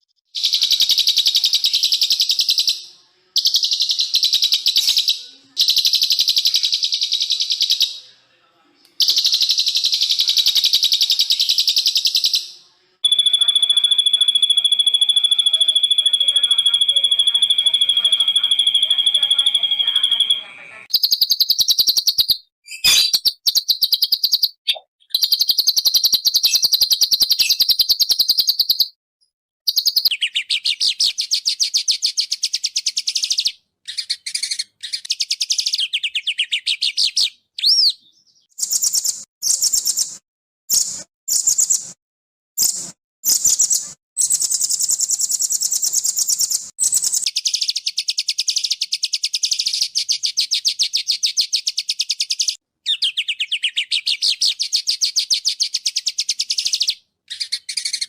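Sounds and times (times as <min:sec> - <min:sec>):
songbird harsh trills: 0:13.0 - 0:21.7, 0:22.7 - 0:24.6.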